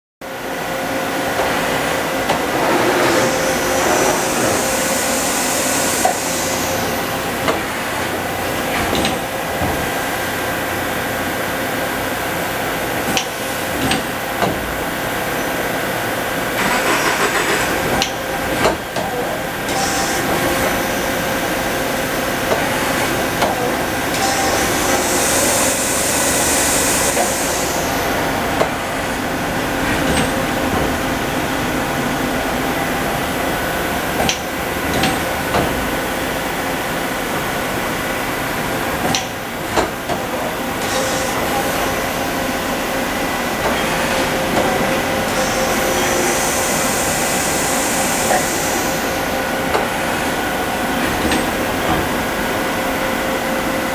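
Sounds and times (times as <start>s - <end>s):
machinery mechanical drone: 0.2s - 53.9s
whining tones: 1.9s - 7.4s
high hissing: 2.4s - 7.2s.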